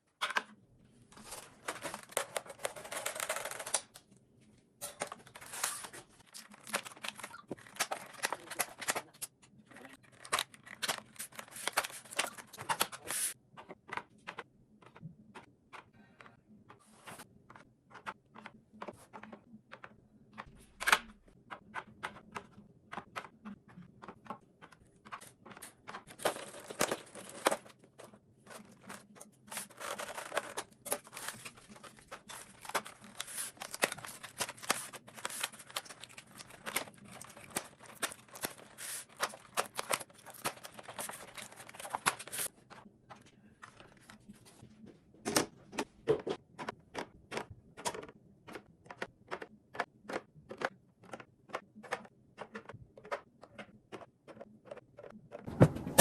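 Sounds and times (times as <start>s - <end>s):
packaging clicks and taps: 6.2s - 9.3s, 17.5s - 44.2s, 45.3s - 55.5s
packaging rustling and crinkling: 29.5s - 42.5s.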